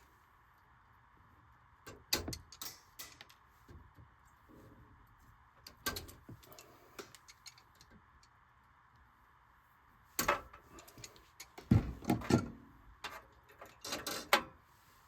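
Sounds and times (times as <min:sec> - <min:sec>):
clicks and knocks on metal: 0:01.9 - 0:04.0, 0:05.6 - 0:08.0.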